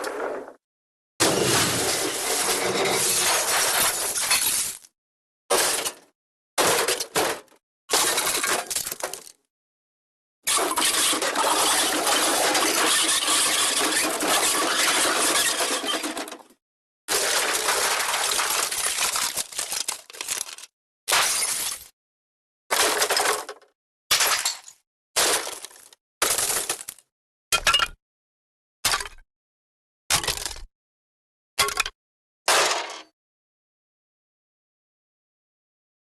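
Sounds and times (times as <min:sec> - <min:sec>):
crash of shattering debris: 0:01.2 - 0:04.9, 0:10.5 - 0:16.4, 0:17.1 - 0:20.6.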